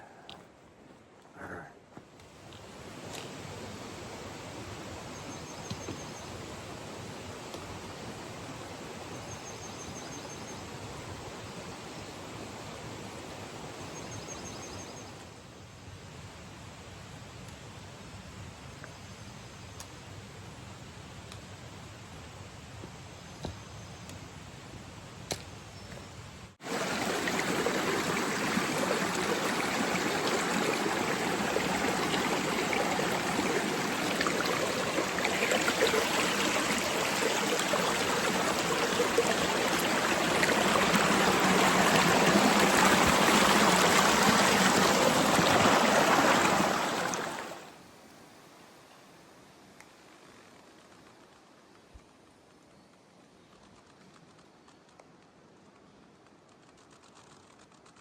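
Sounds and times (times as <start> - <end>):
stream running: 2.4 - 14.7, 26.6 - 47.8
small ticks: 53.5 - 58.0.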